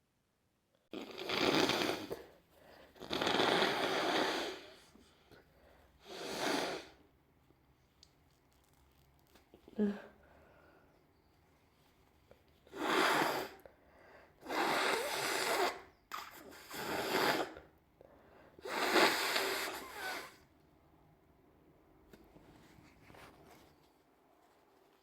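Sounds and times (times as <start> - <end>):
person blowing nose: 0.9 - 2.3, 3.0 - 4.8, 6.0 - 7.0, 12.7 - 13.6, 14.4 - 17.7, 18.6 - 20.4.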